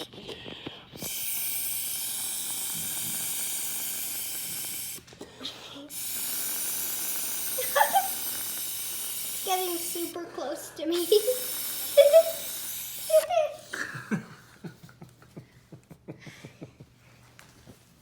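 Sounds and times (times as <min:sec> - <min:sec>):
air blowing through a straw: 0:00.0 - 0:05.1, 0:05.8 - 0:13.7.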